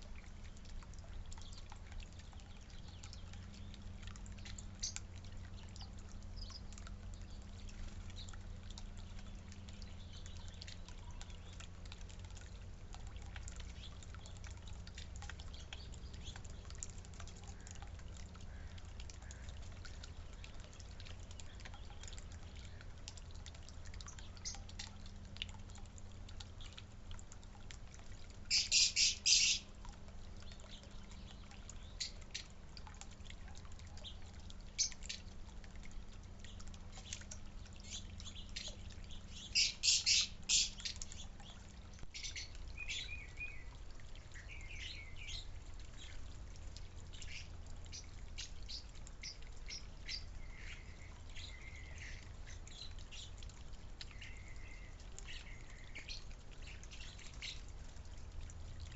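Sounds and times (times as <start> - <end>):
faint low hum: 0.0 - 58.9
birds chirping and warbling: 0.3 - 35.6, 36.2 - 57.7
harsh bird calls: 28.5 - 29.6.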